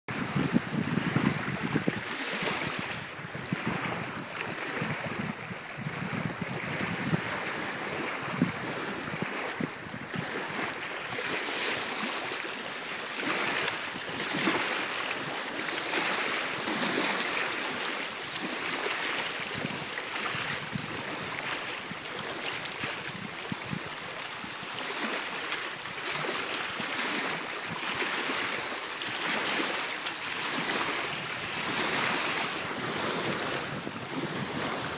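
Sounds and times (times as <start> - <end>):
wind buffeting microphone: 0.1 - 12.1, 19.4 - 24.2, 30.4 - 34.9
water splashing around kayak: 0.1 - 34.9.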